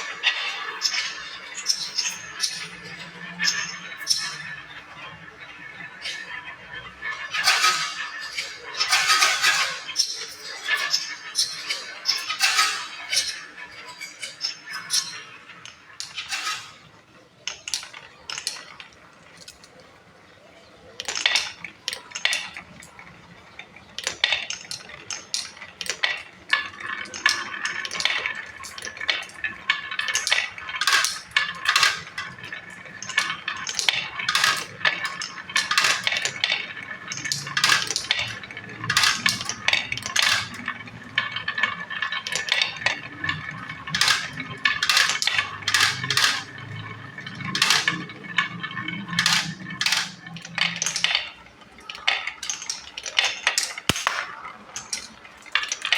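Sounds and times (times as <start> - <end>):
marbles clicking on track: 0.0 - 55.9
marbles rolling rumble: 0.0 - 55.9.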